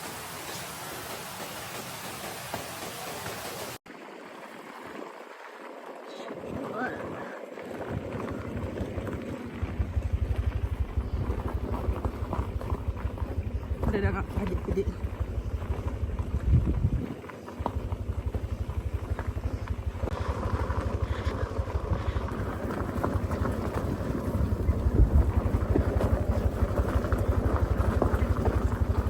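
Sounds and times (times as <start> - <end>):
engine running with pulsing throb: 4.9 - 29.0.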